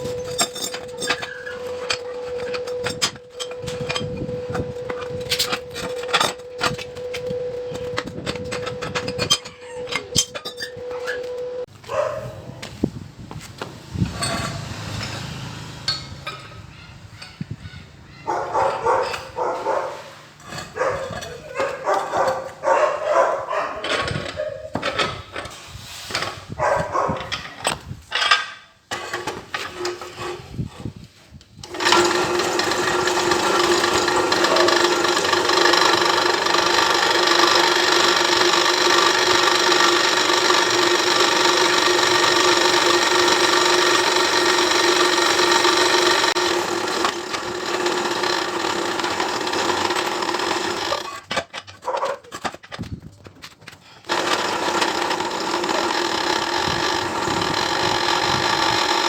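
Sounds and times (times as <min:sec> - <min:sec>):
power tool whining: 0:00.0 - 0:26.5, 0:31.6 - 0:52.9, 0:54.0 - 0:59.0
workshop knocks and scrapes: 0:11.2 - 0:16.7, 0:23.9 - 0:31.1.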